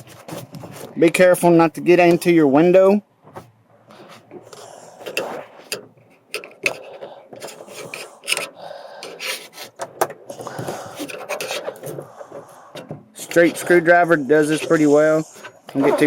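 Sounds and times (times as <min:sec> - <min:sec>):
screwdriver scraping plastic trim: 0:04.5 - 0:16.0.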